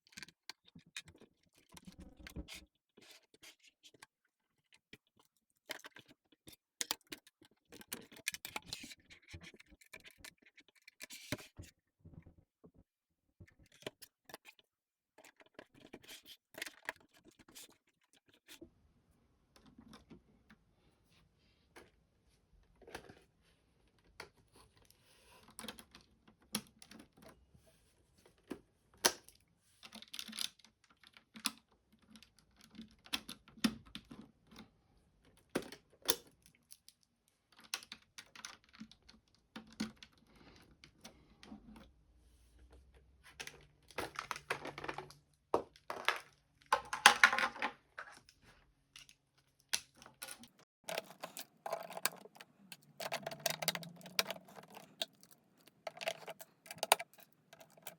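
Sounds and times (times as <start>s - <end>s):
plastic pieces rattling: 45.9s - 48.2s, 50.8s - 57.9s
plastic bricks clicking together: 50.9s - 57.9s.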